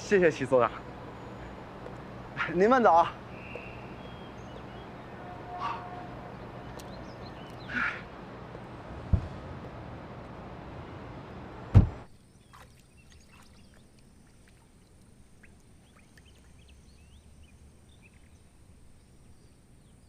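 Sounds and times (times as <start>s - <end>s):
street traffic ambience: 0.0s - 12.1s
faint bird chirps: 2.4s - 8.1s
car door shutting: 9.0s - 9.6s, 11.7s - 12.1s.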